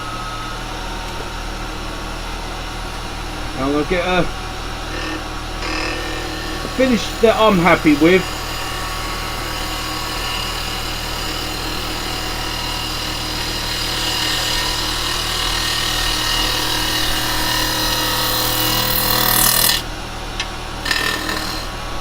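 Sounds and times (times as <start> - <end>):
wood lathe motor hum: 0.0 - 22.0
turning tool cutting wood hiss: 4.8 - 19.8, 20.8 - 21.8.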